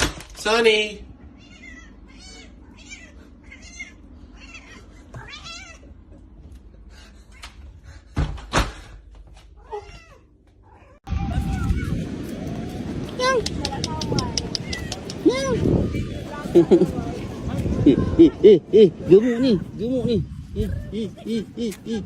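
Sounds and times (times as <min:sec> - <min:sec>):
cat meowing: 0:01.4 - 0:05.9, 0:14.2 - 0:15.6.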